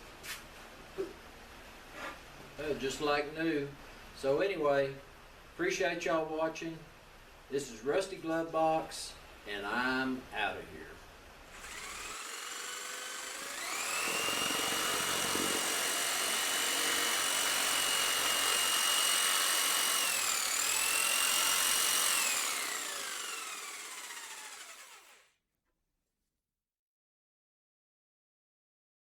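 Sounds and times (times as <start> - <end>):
high-speed motor whine: 11.6 - 25.2.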